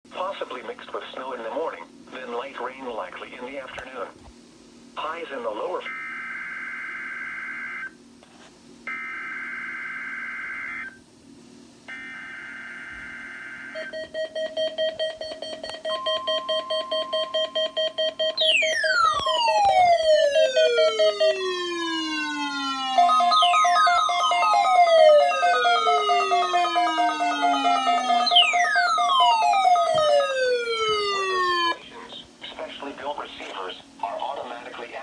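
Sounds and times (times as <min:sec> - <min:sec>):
rapidly pulsing alarm tone: 0:11.9 - 0:31.8
faint steady alert tone: 0:18.4 - 0:31.8
falling siren-like sweeps: 0:18.4 - 0:31.8.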